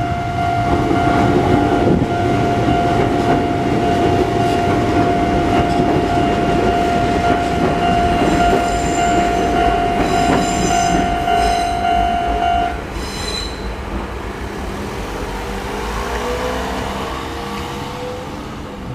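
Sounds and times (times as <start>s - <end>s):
level-crossing warning bell ringing: 0.0s - 13.7s
electric train rumbling past: 0.0s - 18.9s.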